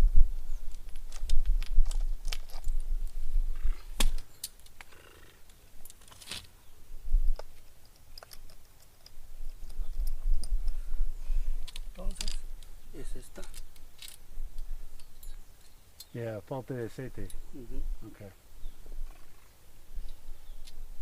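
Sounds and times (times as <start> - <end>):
chainsaw chain metallic clicks: 13.4 - 14.2.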